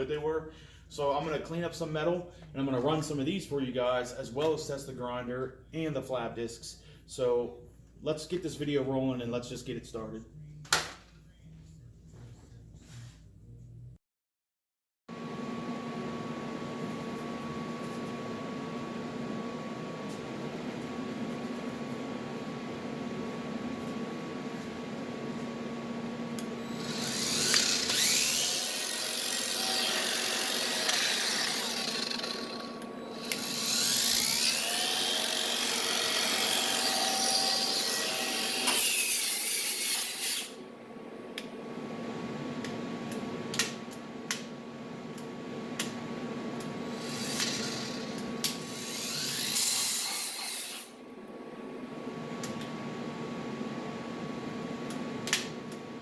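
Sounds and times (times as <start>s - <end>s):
angle grinder grinding steel: 26.7s - 40.6s, 46.9s - 50.9s.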